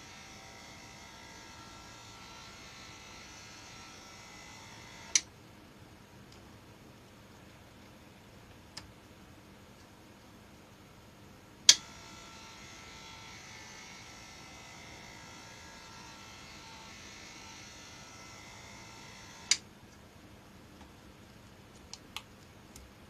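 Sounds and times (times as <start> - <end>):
electric motor whirring: 0.0 - 5.2, 11.7 - 19.6.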